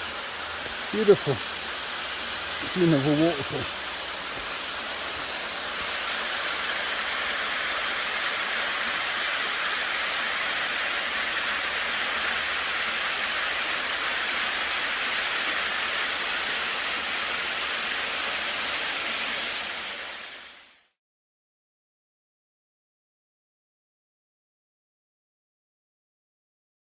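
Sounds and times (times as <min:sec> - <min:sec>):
waterfall rushing: 0:00.0 - 0:20.6.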